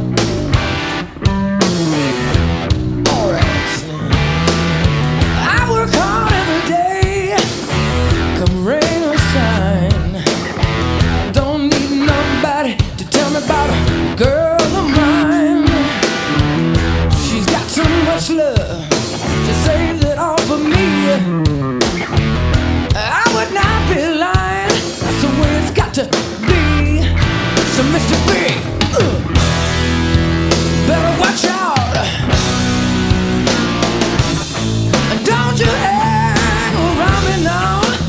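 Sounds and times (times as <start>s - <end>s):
drums: 0.0s - 38.0s
electric guitar: 0.0s - 38.0s
person singing: 3.0s - 10.6s, 11.3s - 21.8s, 22.9s - 29.4s, 30.8s - 32.4s, 34.9s - 38.0s.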